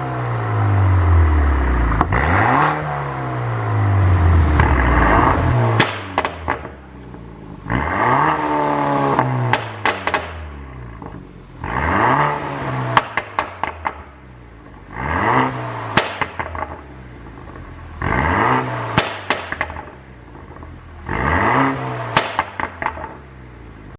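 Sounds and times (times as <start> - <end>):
car engine revving: 0.0 - 23.9
sharp exhaust pops: 4.5 - 7.1, 9.2 - 11.2, 12.9 - 14.2, 15.9 - 23.2.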